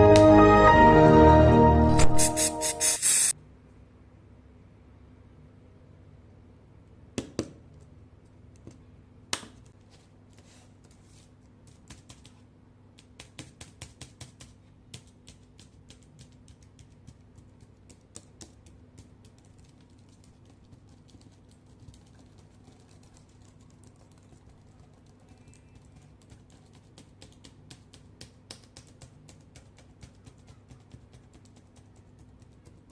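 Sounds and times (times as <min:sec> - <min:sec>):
laptop keyboard typing: 0:11.6 - 0:12.4, 0:13.0 - 0:32.9.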